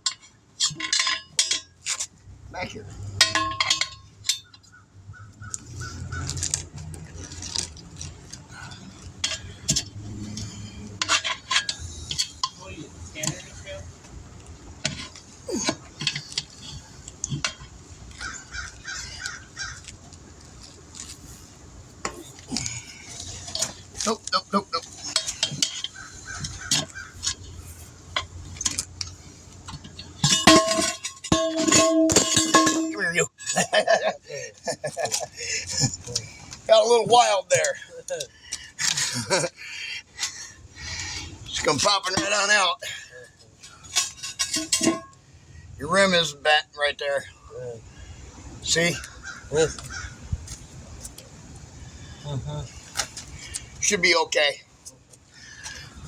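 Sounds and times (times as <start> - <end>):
metal tools clinking on rim: 0.0 - 2.1, 3.0 - 4.8, 5.5 - 13.8, 14.8 - 19.9, 22.0 - 45.2.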